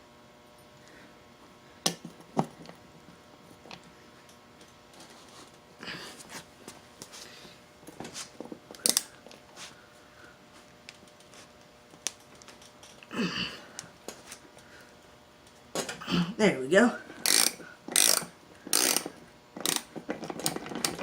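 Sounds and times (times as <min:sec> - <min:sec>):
socket wrench clinking on lug nuts: 0:17.3 - 0:19.8.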